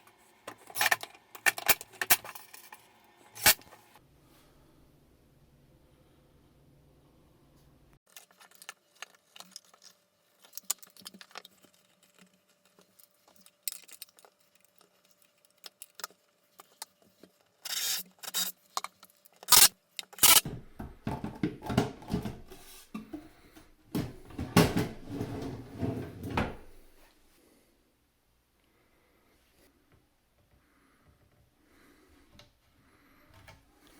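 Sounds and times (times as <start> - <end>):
cabinet hardware clicks and clatter: 19.5 - 23.2, 23.9 - 26.9.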